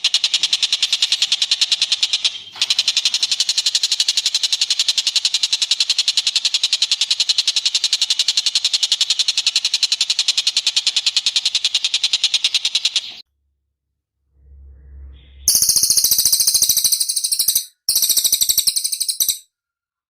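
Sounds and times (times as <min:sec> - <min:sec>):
bird high-pitched trill: 0:15.2 - 0:19.5.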